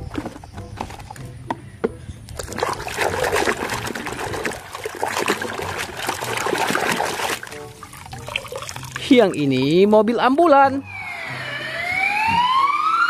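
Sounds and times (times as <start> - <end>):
water splashing and trickling: 2.3 - 10.7.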